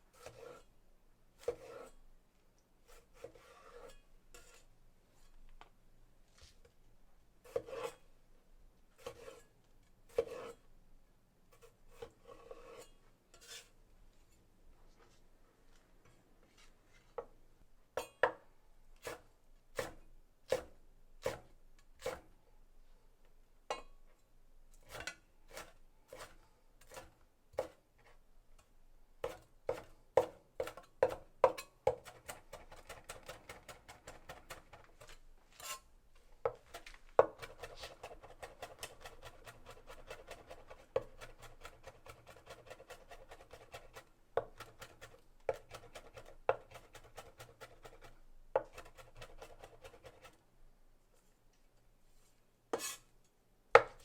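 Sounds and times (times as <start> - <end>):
knife chopping on cutting board: 1.4 - 1.9, 10.1 - 10.5, 19.8 - 22.3, 24.9 - 27.8, 29.2 - 35.8, 36.4 - 50.4, 52.7 - 53.0, 53.8 - 54.0.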